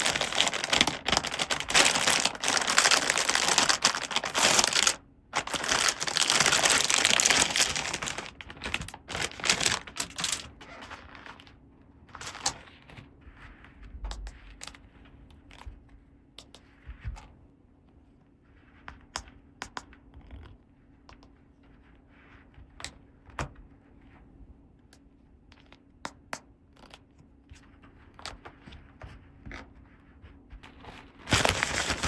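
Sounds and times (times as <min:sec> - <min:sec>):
packaging rustling: 0:00.0 - 0:11.2, 0:12.1 - 0:12.6, 0:31.2 - 0:32.0
faint steady hum: 0:00.0 - 0:22.0.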